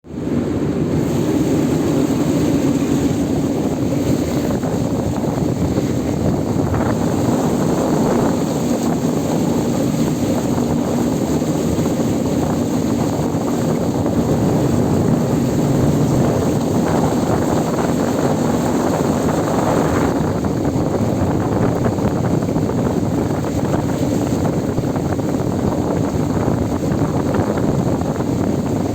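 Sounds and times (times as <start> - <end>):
cooling tower fan drone: 0.0 - 28.9
water falling: 1.0 - 20.2.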